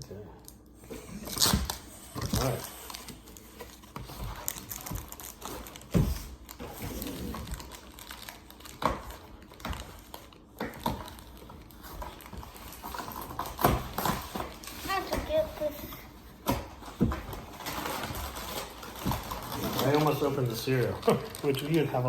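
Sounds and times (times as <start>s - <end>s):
wrapper crinkling: 1.2s - 15.7s, 16.9s - 22.0s.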